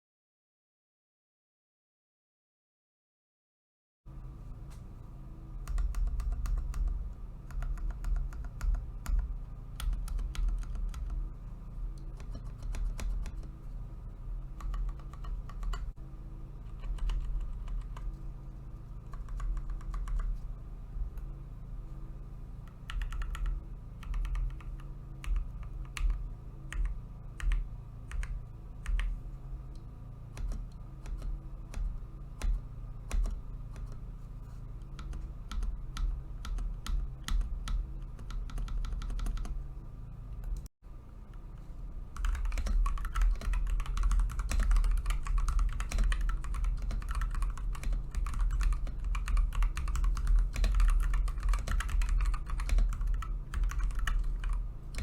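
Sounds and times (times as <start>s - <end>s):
fast typing on keyboard: 5.6s - 11.2s, 12.1s - 13.5s, 14.6s - 16.0s, 16.8s - 18.1s, 19.1s - 20.4s, 22.7s - 29.1s, 30.4s - 34.0s, 35.0s - 39.6s, 42.2s - 55.0s.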